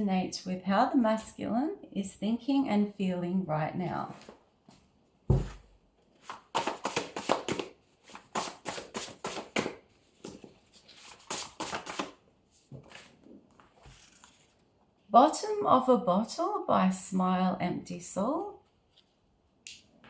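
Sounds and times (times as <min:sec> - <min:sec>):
cards being shuffled: 0:06.2 - 0:13.2.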